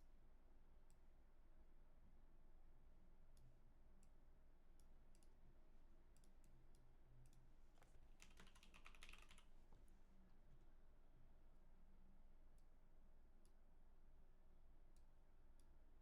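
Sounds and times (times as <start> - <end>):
faint computer clicks: 6.2 - 9.8.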